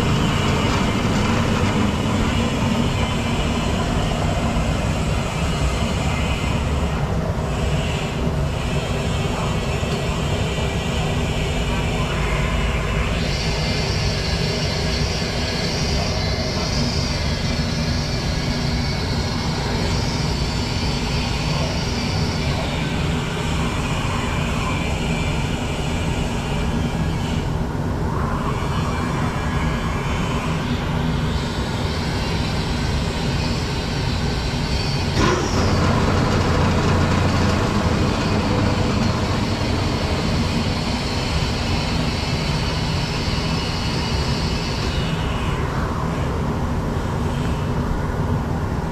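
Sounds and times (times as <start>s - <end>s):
hiss: 4.0s - 45.9s
grinder motor humming: 35.2s - 41.2s.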